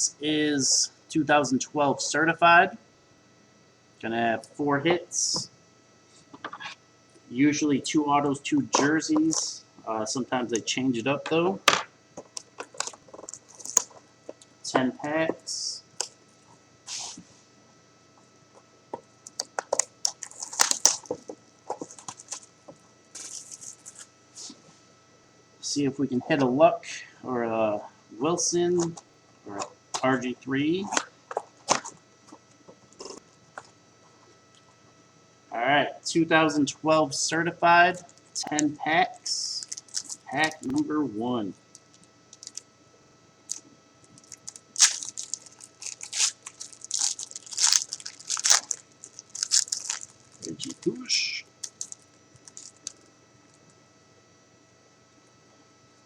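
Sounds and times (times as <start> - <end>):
foil card packs crinkling: 12.2 - 14.1, 19.3 - 22.5, 23.1 - 24.1, 39.5 - 40.9, 41.7 - 42.7, 43.5 - 53.6.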